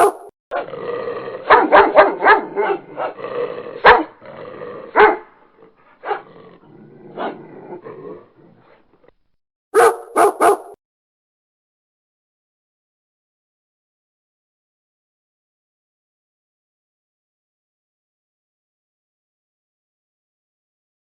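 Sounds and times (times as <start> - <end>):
dog barking: 0.0 - 0.7, 1.5 - 3.2, 3.8 - 4.2, 4.9 - 5.4, 6.0 - 6.3, 9.8 - 10.8.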